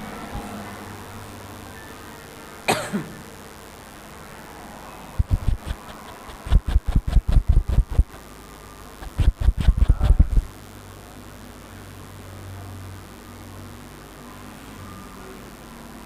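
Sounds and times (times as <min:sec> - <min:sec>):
rapid percussive massage thumps: 0:05.2 - 0:08.2, 0:09.0 - 0:10.5.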